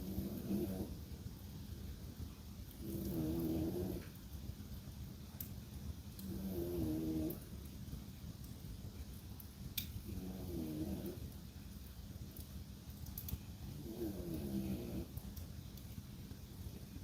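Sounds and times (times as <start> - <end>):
dog snoring: 0.0 - 1.0, 2.8 - 4.1, 6.2 - 7.4, 10.1 - 11.3, 13.7 - 15.1
wood fire crackling: 0.0 - 17.0.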